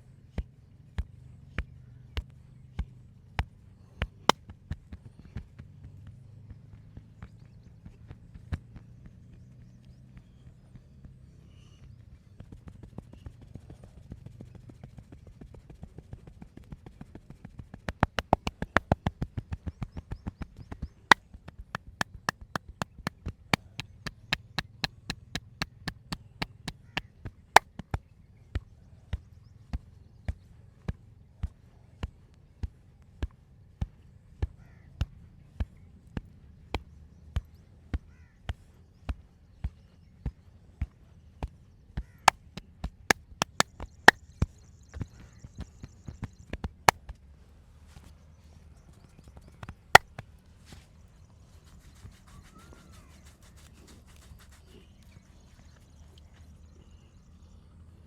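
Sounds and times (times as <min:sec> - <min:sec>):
hands slapping body in massage: 0:17.9 - 0:20.2, 0:21.5 - 0:27.9, 0:43.4 - 0:44.2.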